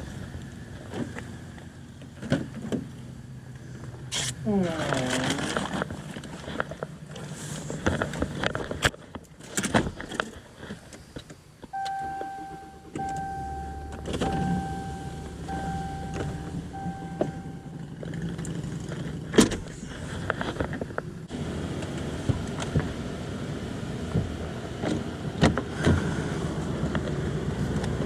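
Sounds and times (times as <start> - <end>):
handling clicks and rattles: 5.2 - 21.1
steady beeps: 11.8 - 17.8.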